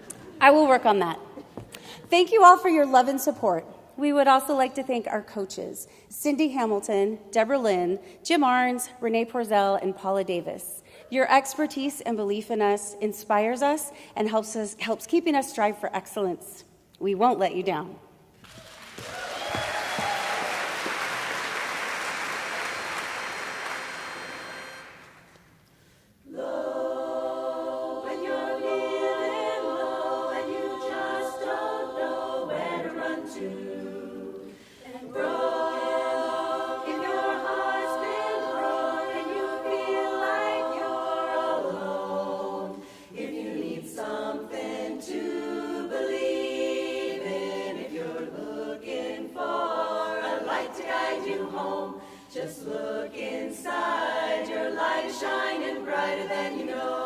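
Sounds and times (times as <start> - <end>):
a cappella chorus singing: 21.0 - 57.0.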